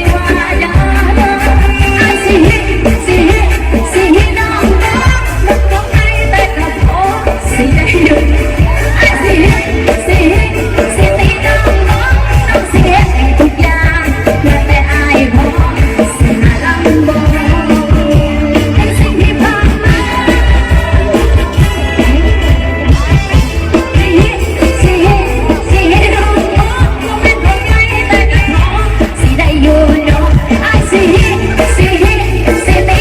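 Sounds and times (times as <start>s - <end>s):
dance music by a combo band: 0.0s - 33.0s
person singing: 0.0s - 33.0s
steady drum beat: 0.0s - 33.0s.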